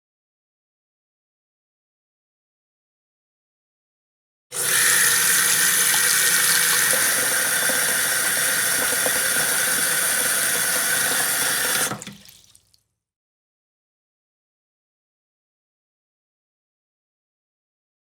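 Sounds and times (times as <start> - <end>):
tap water gushing into sink: 4.6 - 12.8.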